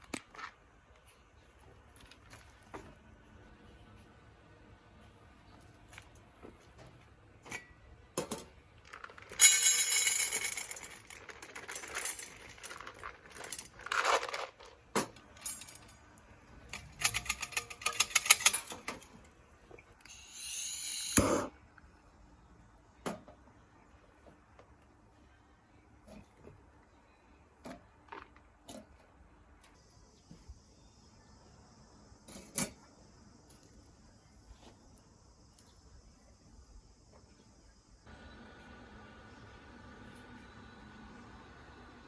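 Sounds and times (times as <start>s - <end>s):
small pieces rattling on metal: 8.3s - 19.1s.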